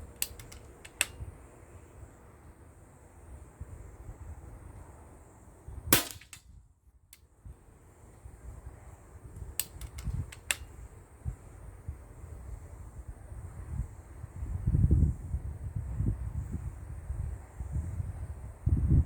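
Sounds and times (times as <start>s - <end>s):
light clicks: 0.2s - 1.2s, 9.4s - 10.7s
air rifle shot crack: 5.9s - 6.4s
wind rumbling on microphone: 7.4s - 19.0s.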